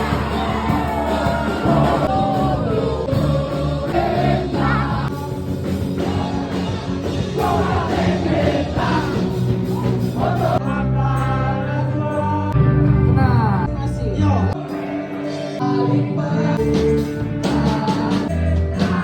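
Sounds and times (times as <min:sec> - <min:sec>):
person singing: 0:14.5 - 0:19.0.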